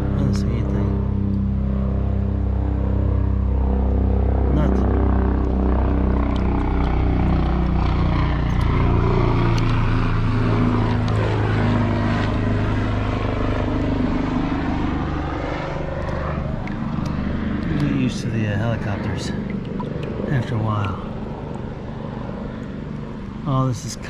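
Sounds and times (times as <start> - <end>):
helicopter passing: 0.0 - 24.0.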